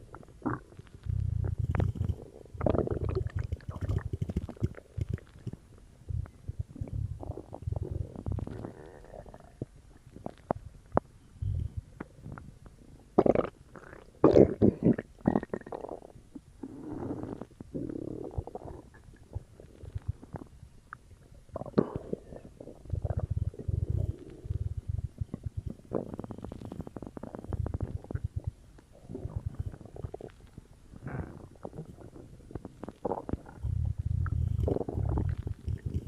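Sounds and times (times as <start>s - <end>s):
stomach gurgling: 0.0s - 36.0s.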